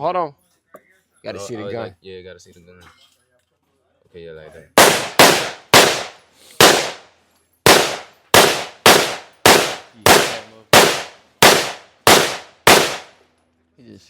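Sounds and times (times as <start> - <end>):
gunshots: 4.8 - 13.2.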